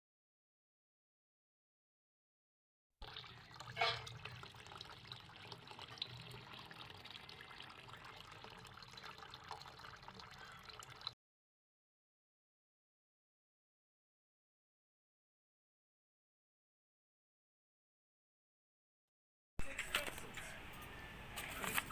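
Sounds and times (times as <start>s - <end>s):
tap water splashing into sink: 3.0s - 11.2s.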